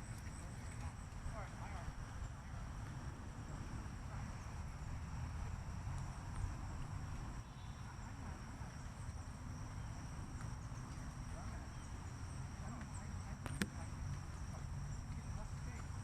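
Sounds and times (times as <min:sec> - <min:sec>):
continuous low rumble: 0:00.0 - 0:16.0
insects trilling: 0:03.4 - 0:16.0
faint distant voices: 0:07.4 - 0:16.0.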